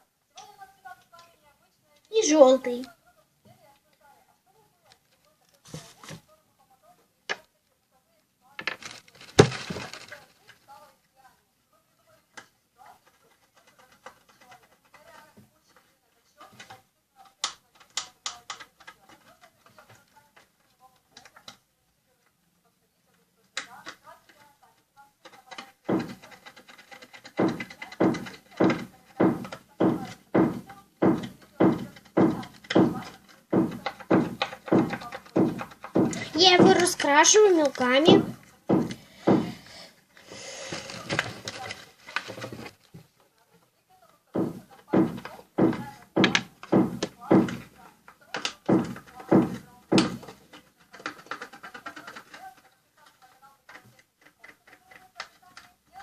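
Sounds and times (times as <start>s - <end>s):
crayon scraping on plastic tub: 25.3s - 42.8s.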